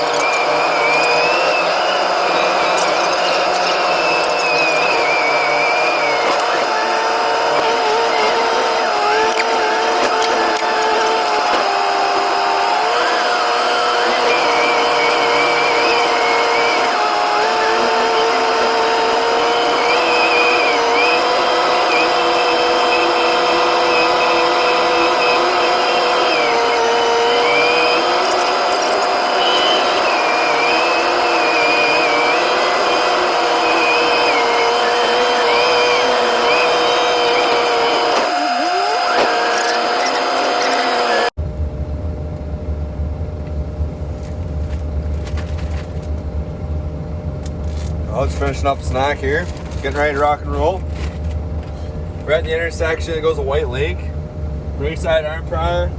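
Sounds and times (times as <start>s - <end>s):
machine engine whining and rumbling: 0.0s - 55.9s.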